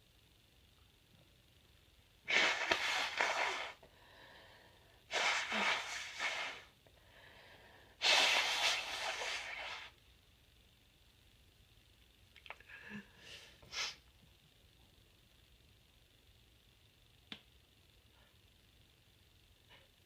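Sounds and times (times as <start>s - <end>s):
quiet breathing: 2.4s - 9.9s.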